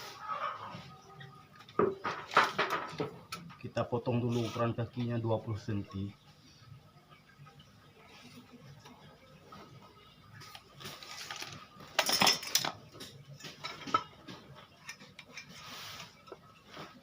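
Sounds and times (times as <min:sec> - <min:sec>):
tools and wood clattering: 0:01.5 - 0:03.7, 0:10.4 - 0:17.0.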